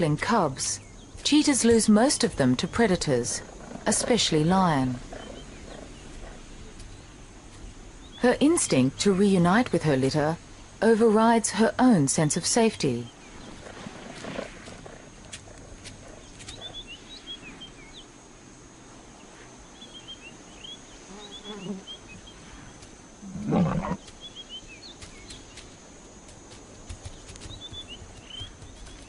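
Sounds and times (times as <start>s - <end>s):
big cat snarling: 3.4s - 4.2s, 5.0s - 6.5s, 13.5s - 16.8s, 23.2s - 24.0s.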